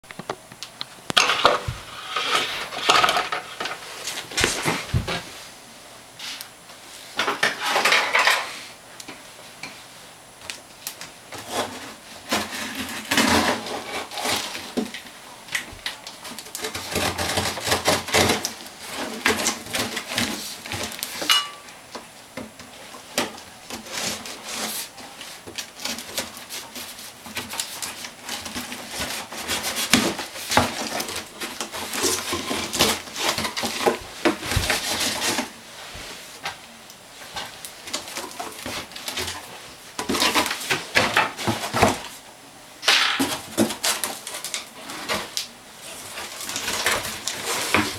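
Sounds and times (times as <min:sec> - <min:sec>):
packaging rustling: 0:23.2 - 0:42.2, 0:43.3 - 0:47.9.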